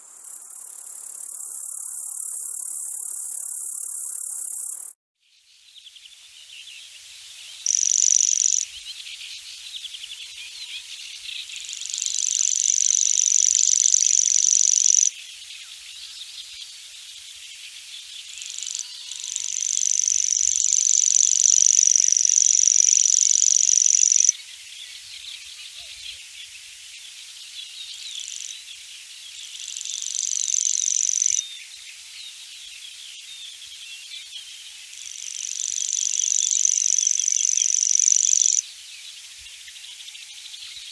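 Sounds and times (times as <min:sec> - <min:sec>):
background chirping: 0:00.0 - 0:40.9
grasshopper shrill buzzing: 0:07.7 - 0:08.7, 0:11.8 - 0:15.1, 0:18.5 - 0:24.3, 0:29.8 - 0:31.4, 0:35.1 - 0:38.6.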